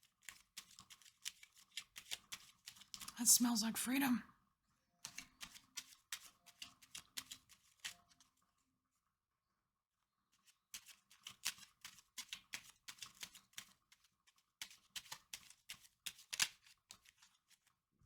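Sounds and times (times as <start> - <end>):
cards being shuffled by hand: 0.0 - 3.5, 5.0 - 8.3, 10.4 - 17.7.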